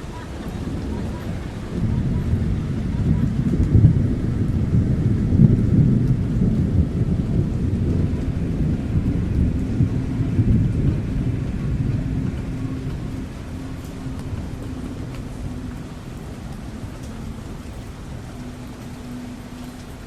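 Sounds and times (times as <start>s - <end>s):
deep thunder-like rumble: 0.0s - 20.0s
faint rain-like hiss: 0.0s - 20.0s
low steady hum: 0.0s - 20.0s.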